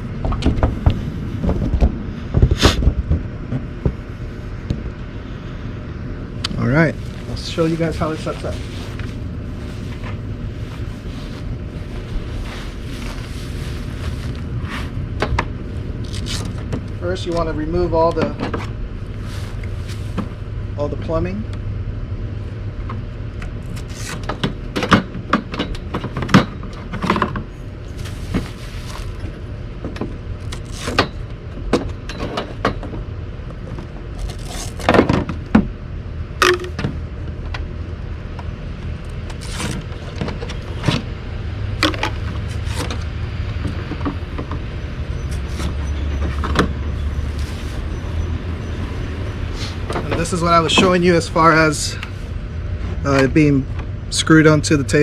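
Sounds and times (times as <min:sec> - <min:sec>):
steady low hum: 0:00.0 - 0:55.0
pipes knocking and clattering: 0:36.4 - 0:37.0.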